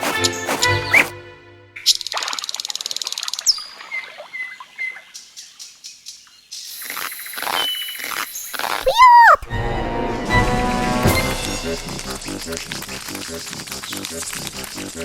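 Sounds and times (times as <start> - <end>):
cartoon birds chirping: 1.8 - 9.5.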